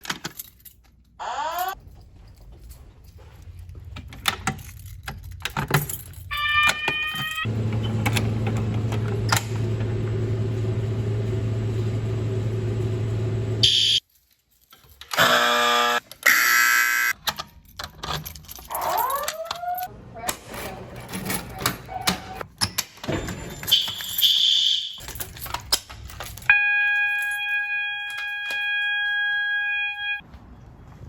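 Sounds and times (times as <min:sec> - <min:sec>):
rising alarm tones: 0:09.6 - 0:14.0, 0:26.5 - 0:30.2
buzzing fire alarm: 0:09.7 - 0:14.0, 0:15.2 - 0:17.2, 0:23.6 - 0:25.1, 0:26.5 - 0:30.2
harsh alarm burst: 0:09.7 - 0:14.0, 0:26.5 - 0:30.2.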